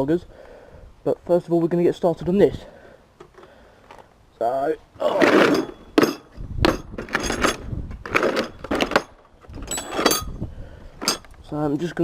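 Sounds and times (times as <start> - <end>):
metal hand tools clinking: 5.2 - 10.4, 11.0 - 11.3.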